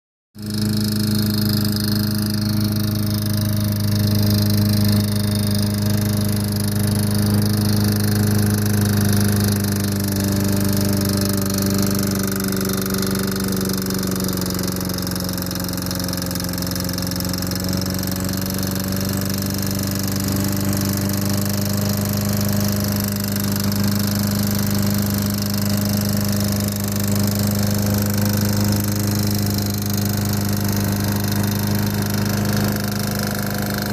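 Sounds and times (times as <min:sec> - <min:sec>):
lawnmower engine knocking: 0:00.4 - 0:33.9.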